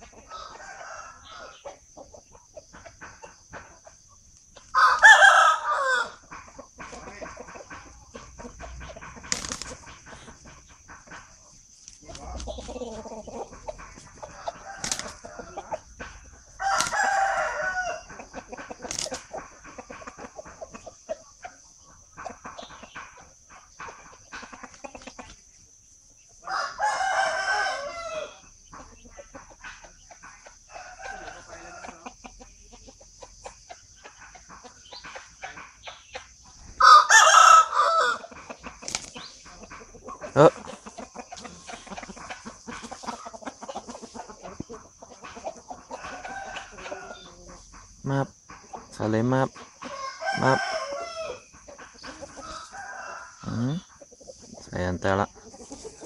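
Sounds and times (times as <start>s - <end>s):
rooster crowing: 0.2s - 1.8s, 4.7s - 6.2s, 12.7s - 18.3s, 26.4s - 28.5s, 30.7s - 32.2s, 36.8s - 38.3s, 45.9s - 47.6s, 49.8s - 51.5s, 52.2s - 53.9s.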